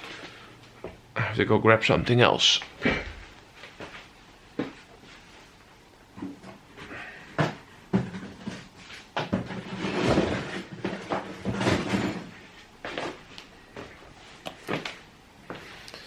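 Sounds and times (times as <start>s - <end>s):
knocks and clatter of handling: 7.3s - 13.2s.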